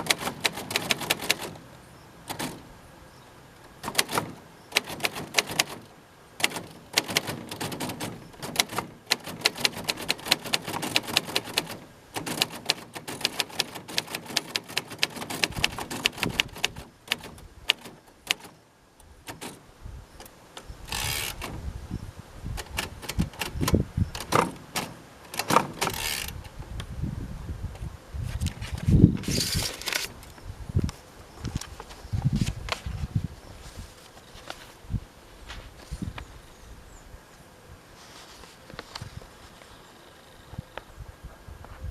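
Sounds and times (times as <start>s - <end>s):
typewriter typing: 0.0s - 1.6s, 2.3s - 2.6s, 3.8s - 18.6s, 19.3s - 19.6s, 20.9s - 21.6s, 22.6s - 26.4s.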